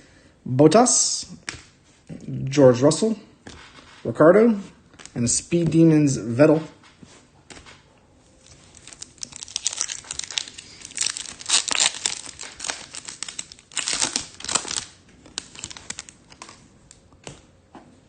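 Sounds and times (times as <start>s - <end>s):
foil wrapper crinkling and tearing: 8.4s - 17.0s.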